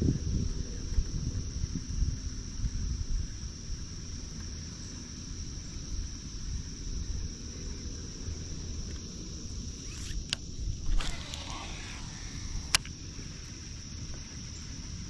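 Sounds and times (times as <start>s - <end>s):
insects buzzing chorus: 0.0s - 15.0s
wind rumble on microphone: 0.0s - 15.0s
sharp click: 9.9s - 12.9s.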